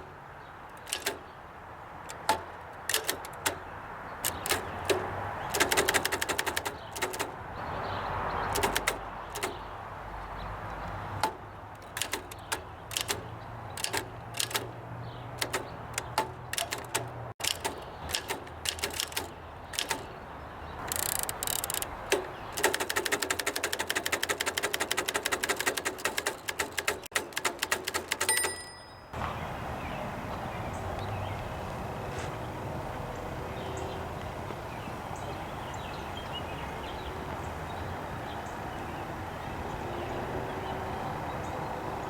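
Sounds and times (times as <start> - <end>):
typewriter key clacks: 0.7 - 1.3, 2.0 - 7.4, 8.4 - 9.6, 11.2 - 20.2, 20.8 - 28.9
typewriter scraping rasp: 0.8 - 1.2, 2.1 - 3.6, 4.2 - 7.4, 8.4 - 9.6, 11.2 - 20.1, 20.8 - 28.5.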